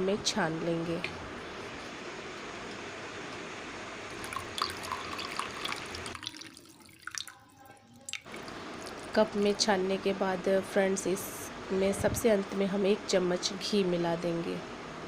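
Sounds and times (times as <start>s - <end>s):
liquid pouring into a cup: 4.1s - 9.1s.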